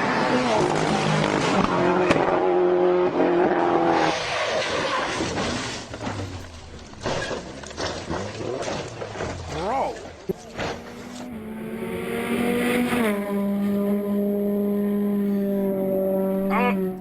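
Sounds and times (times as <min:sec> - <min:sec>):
car engine at high revs: 0:00.0 - 0:17.0
low hum: 0:10.1 - 0:17.0.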